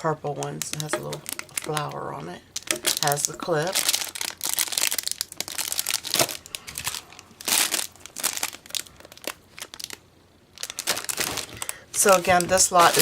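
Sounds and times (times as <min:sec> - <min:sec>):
packaging crinkling: 0:00.4 - 0:13.0.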